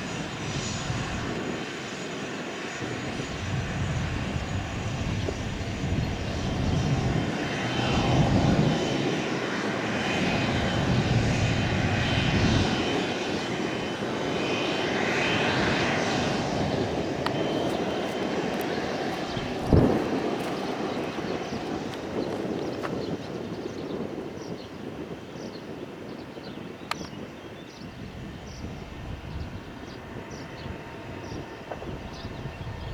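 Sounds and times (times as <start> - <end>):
jet engines running: 0.0 - 32.9
sharp thump: 19.7 - 20.1.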